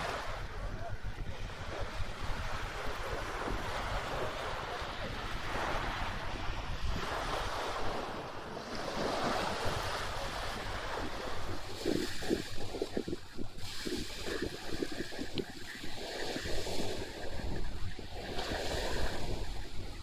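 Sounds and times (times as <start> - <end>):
sea waves washing in: 0.0 - 20.0
wind buffeting microphone: 0.0 - 20.0.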